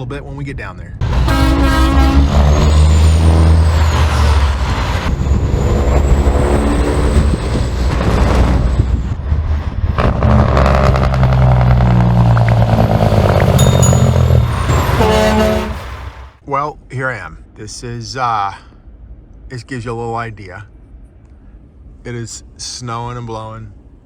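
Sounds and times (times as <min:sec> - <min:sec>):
truck engine driving: 0:01.0 - 0:16.4.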